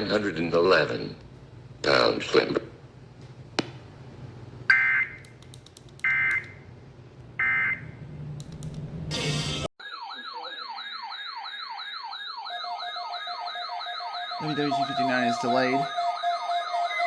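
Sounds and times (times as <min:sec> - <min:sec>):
siren sweeping up and down: 0:09.8 - 0:17.0.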